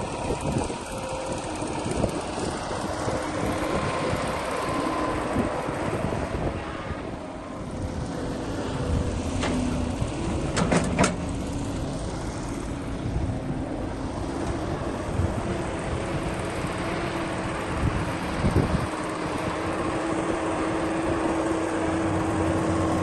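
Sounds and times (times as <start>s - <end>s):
diesel engine running: 0.0s - 23.0s.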